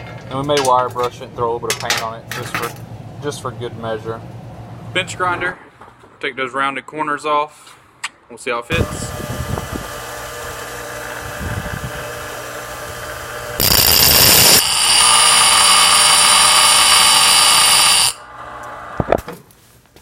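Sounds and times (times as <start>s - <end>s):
bench grinder running: 8.7s - 19.1s
high-pitched grinding of steel: 12.0s - 18.6s.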